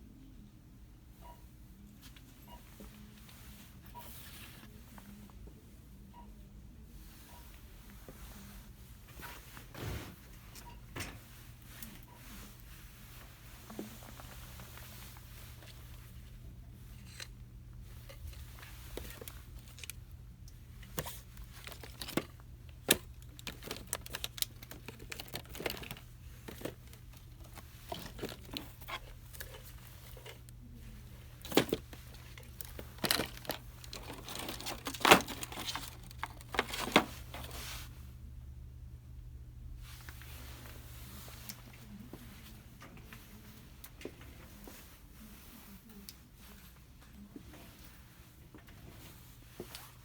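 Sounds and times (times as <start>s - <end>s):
packaging crinkling and tearing: 21.5s - 26.0s.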